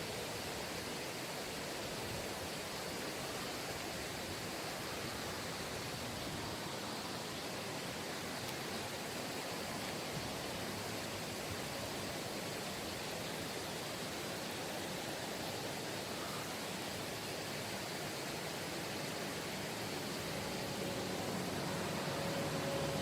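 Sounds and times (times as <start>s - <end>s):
stream water rushing: 0.0s - 23.0s.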